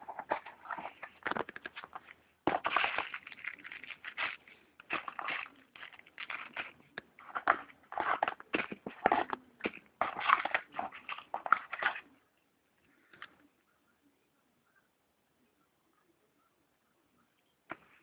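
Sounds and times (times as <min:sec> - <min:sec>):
packaging crinkling and rustling: 0:00.0 - 0:12.0.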